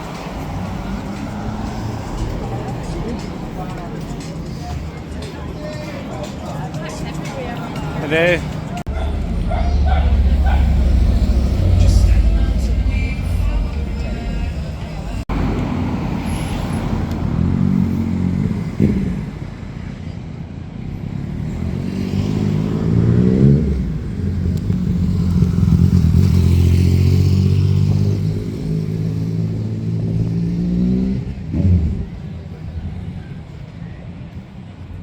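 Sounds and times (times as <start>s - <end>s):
vehicle engine accelerating: 6.8s - 19.5s, 21.0s - 32.3s.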